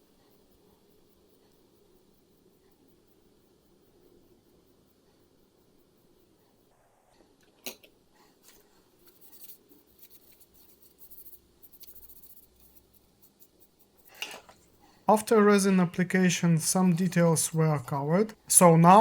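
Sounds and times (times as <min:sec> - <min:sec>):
hands scratching plastic part: 0:09.0 - 0:14.6.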